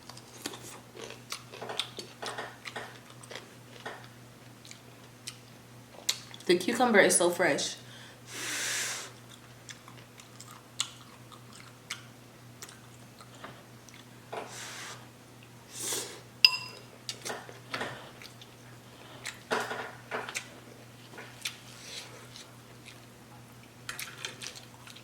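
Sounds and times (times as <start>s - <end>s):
chewing and crunching cucumber: 0.0s - 6.5s, 9.2s - 14.2s, 16.8s - 19.5s, 20.1s - 25.0s
breaths through the nose: 8.0s - 9.2s, 14.5s - 15.1s
utensil clinking against dish: 16.5s - 16.9s.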